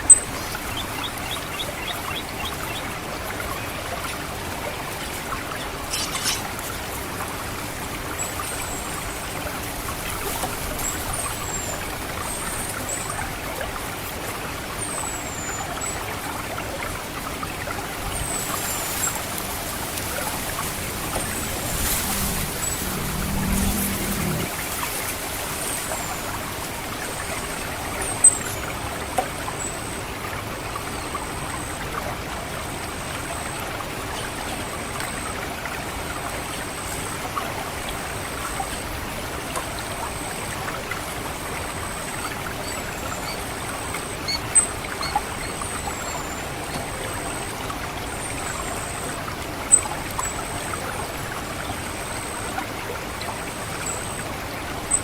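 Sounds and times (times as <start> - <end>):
water trickling and gurgling: 0.0 - 55.0
high-pitched thrush call notes: 5.9 - 6.5
sharp high bird chips: 5.9 - 6.6.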